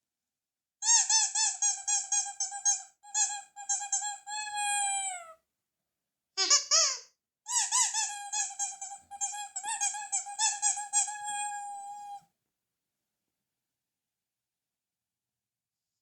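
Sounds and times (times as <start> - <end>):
rubber squeaky toy squeaking: 0.8 - 5.4, 6.4 - 12.2.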